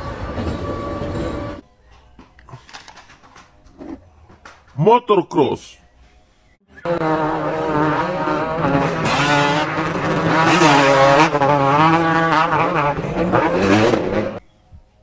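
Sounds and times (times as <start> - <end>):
dirt bike engine revving: 6.8 - 14.4.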